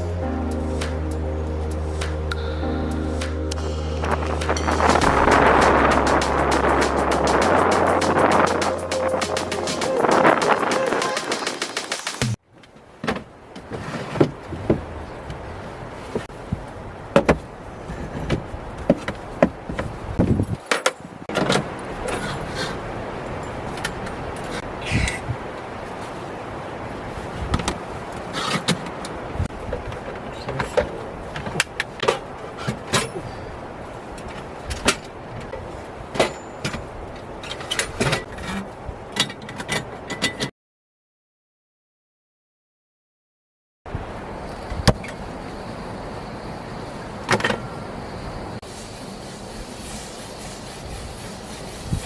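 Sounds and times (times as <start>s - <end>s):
steady rushing noise: 0.0s - 12.4s
wind noise: 0.0s - 12.4s, 14.4s - 32.4s, 43.9s - 52.0s.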